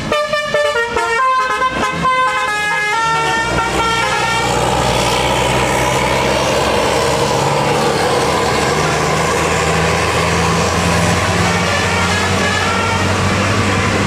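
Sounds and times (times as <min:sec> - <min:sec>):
diesel bus engine humming: 0:00.0 - 0:14.0
road and traffic noise: 0:00.0 - 0:14.0.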